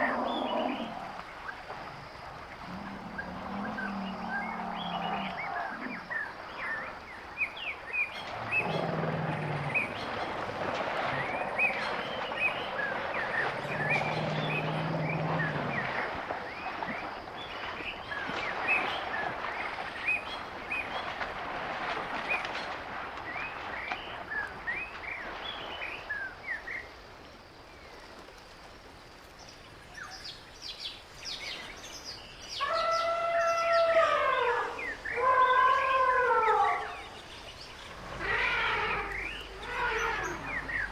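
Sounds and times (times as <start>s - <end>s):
drawn-out animal call: 37.9s - 40.9s.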